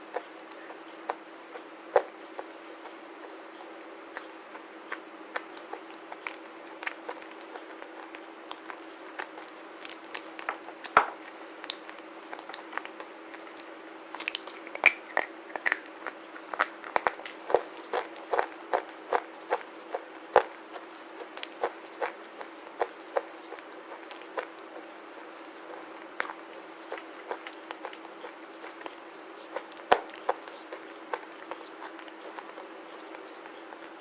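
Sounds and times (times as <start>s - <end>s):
chewing crunches: 0.0s - 34.0s.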